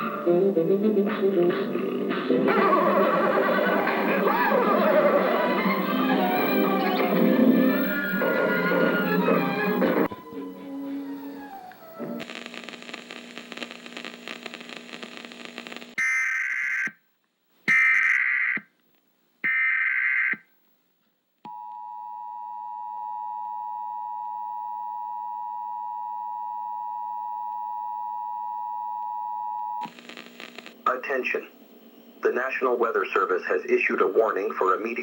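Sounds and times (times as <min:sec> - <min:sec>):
hissing static with low hum: 0:00.0 - 0:16.7, 0:29.8 - 0:35.0.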